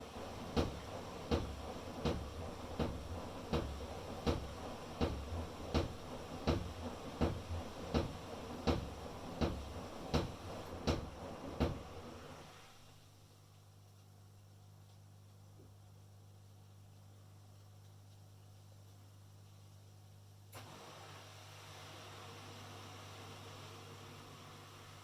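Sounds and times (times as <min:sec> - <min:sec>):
washing machine knocking: 0:00.0 - 0:12.4
low running hum: 0:00.0 - 0:20.5.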